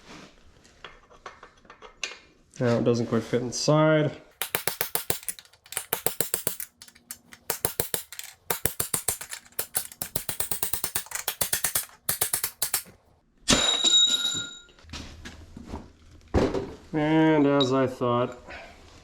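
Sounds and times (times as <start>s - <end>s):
hammer tapping on steel punch: 4.4s - 12.9s.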